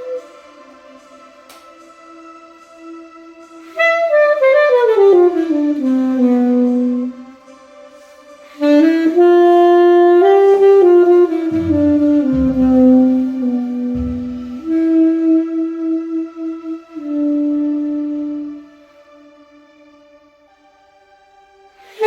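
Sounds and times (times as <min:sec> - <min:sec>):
alto saxophone: 0:00.0 - 0:01.6, 0:03.6 - 0:19.2, 0:21.8 - 0:22.0.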